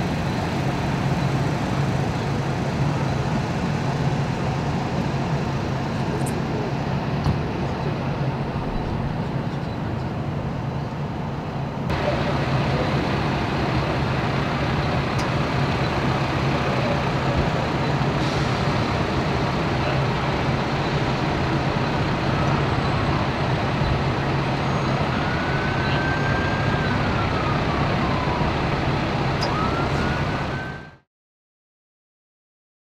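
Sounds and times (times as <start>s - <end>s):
low engine hum: 0.0s - 31.0s
street traffic noise: 0.0s - 31.0s
siren-like tones: 20.0s - 31.0s.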